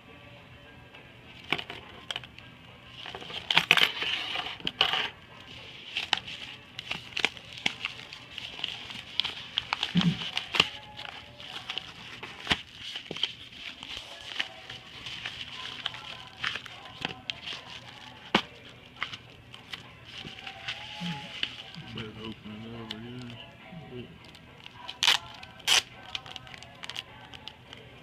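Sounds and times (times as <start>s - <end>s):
wrapper crinkling and tearing: 2.9s - 23.4s, 24.2s - 27.8s.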